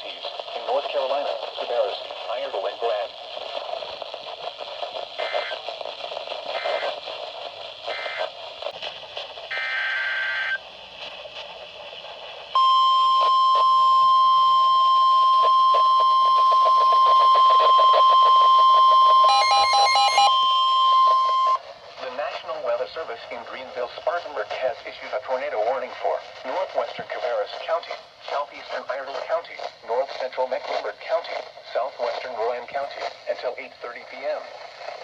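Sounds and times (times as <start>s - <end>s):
radio static hiss: 0.0s - 20.3s, 20.9s - 35.0s
digital data bursts: 5.2s - 5.6s, 6.5s - 7.0s, 7.8s - 8.3s, 9.5s - 10.6s, 12.6s - 21.6s
steady warning alarm tone: 9.5s - 10.6s, 12.6s - 21.6s
warbling data chirps: 12.6s - 21.6s.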